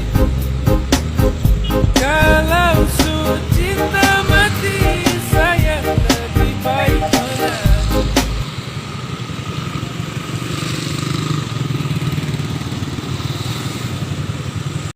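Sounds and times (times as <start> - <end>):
background music: 0.0 - 8.5.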